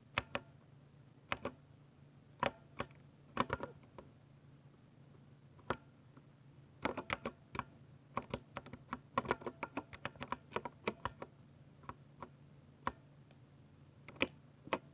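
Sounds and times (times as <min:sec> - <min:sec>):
mechanical keyboard typing: 0:02.4 - 0:03.8, 0:06.8 - 0:11.3, 0:14.1 - 0:14.9.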